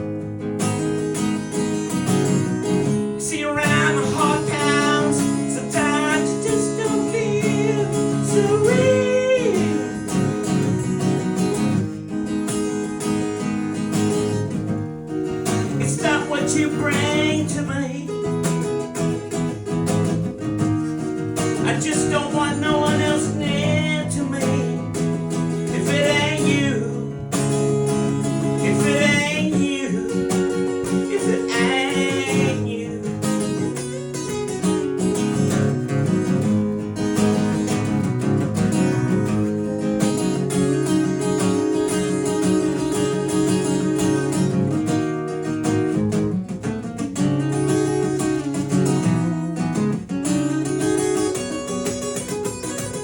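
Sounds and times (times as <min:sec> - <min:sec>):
acoustic guitar strumming and picking: 0:00.0 - 0:53.0.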